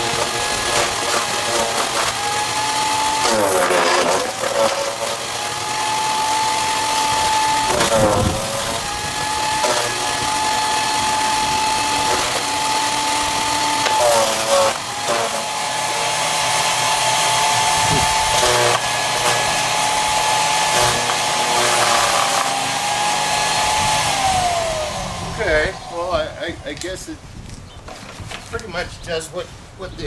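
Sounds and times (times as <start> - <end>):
wood cracking: 0.0 - 23.1
chipper shredder whining: 0.0 - 26.7.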